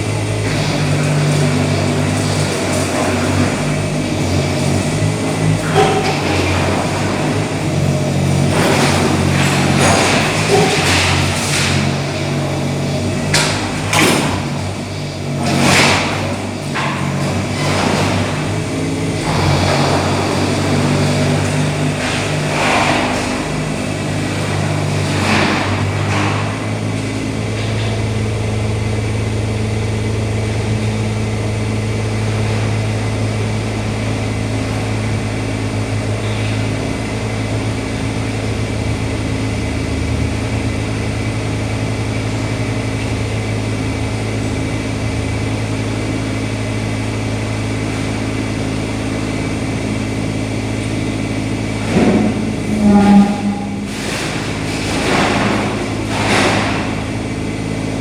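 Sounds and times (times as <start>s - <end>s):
loud crashes and scrapes: 0.0s - 28.2s, 45.4s - 58.0s
excavator engine running: 0.0s - 58.0s.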